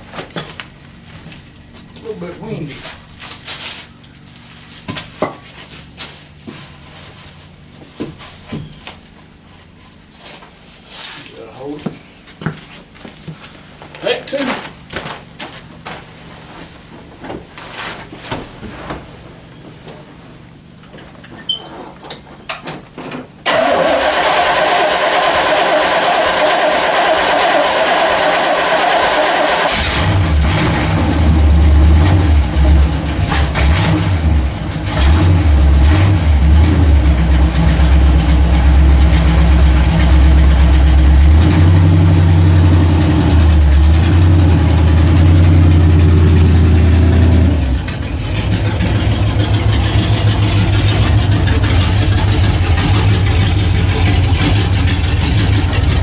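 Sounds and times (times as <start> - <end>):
pickup engine running: 0.0 - 56.0
starter cranking engine: 23.4 - 56.0.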